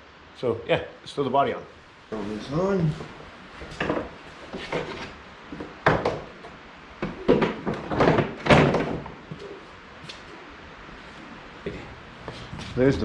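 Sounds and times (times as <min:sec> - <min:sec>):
plastic body thumping on frame: 0:05.6 - 0:09.5.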